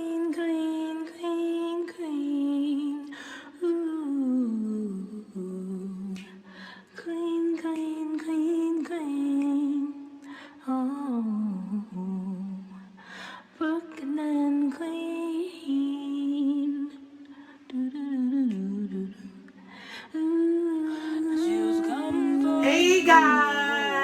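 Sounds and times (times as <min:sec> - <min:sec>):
woman humming a melody: 0:20.6 - 0:24.0.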